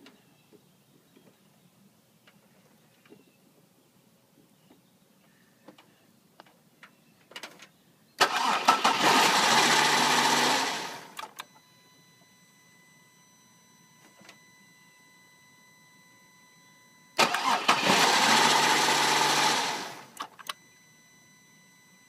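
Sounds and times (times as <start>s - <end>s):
car engine starting and dying: 8.2s - 11.4s, 17.2s - 20.6s
faint high-pitched tone: 11.4s - 17.2s.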